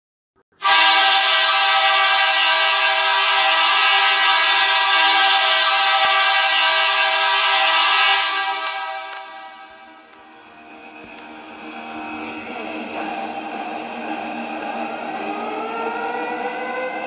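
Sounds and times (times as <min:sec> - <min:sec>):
goal horn blast: 0:00.6 - 0:10.0.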